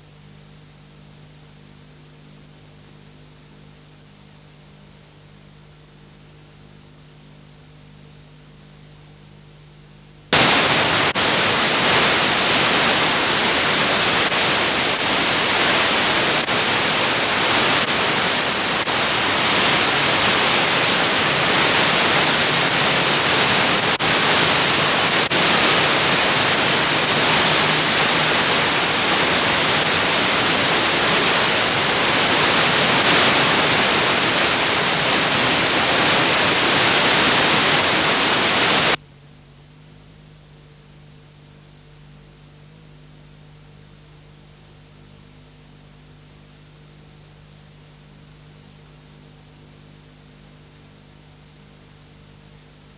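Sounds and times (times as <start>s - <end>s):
loud static hiss: 0.0s - 52.9s.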